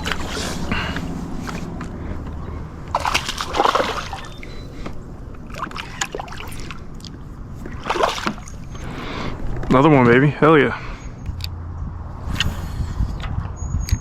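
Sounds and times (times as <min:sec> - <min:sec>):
water splashing and sloshing: 0:00.0 - 0:10.9
steady low rumble: 0:00.0 - 0:14.0.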